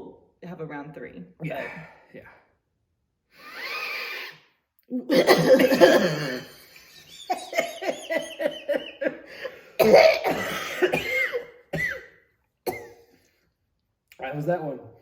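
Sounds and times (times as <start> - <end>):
person laughing: 5.0 - 9.7
person coughing: 5.1 - 13.0.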